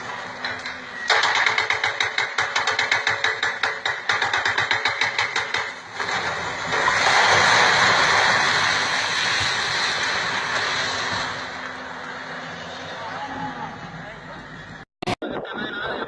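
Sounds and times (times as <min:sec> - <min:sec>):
fast mechanical knocking: 0:00.4 - 0:06.1
rushing noise: 0:06.0 - 0:14.8.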